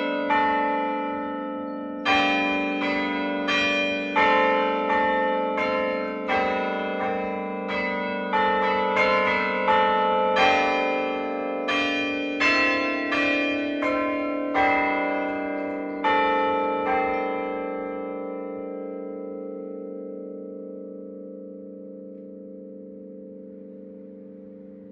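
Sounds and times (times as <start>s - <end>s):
church bells ringing: 0.0s - 24.9s.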